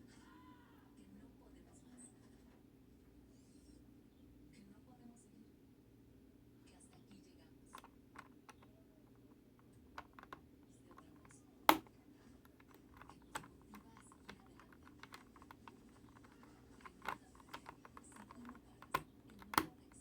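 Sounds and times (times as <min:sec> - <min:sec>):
faint steady hum: 0:00.0 - 0:20.0
small hard parts clicking: 0:10.0 - 0:10.4, 0:12.5 - 0:20.0.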